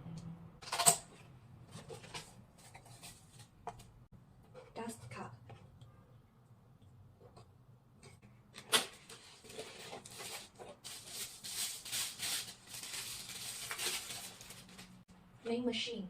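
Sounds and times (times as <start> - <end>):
packaging rustling: 8.7 - 15.0.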